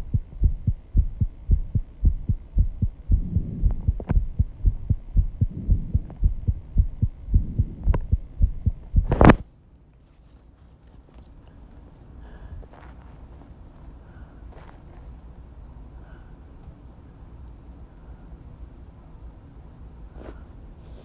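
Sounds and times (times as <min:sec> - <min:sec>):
fast pounding heartbeat: 0:00.0 - 0:09.4
faint hum: 0:00.0 - 0:21.0
breathing: 0:11.4 - 0:15.0, 0:15.9 - 0:17.2, 0:17.9 - 0:18.5, 0:20.1 - 0:21.0.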